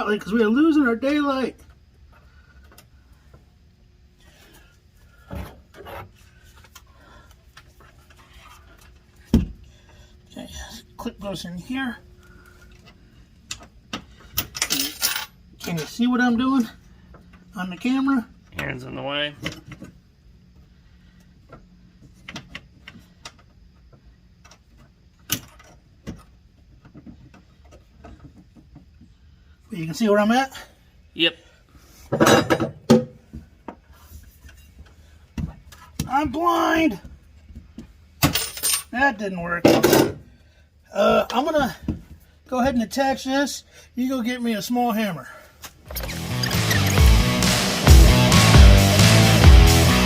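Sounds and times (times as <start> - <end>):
metal parts clicking and knocking: 14.3 - 16.0.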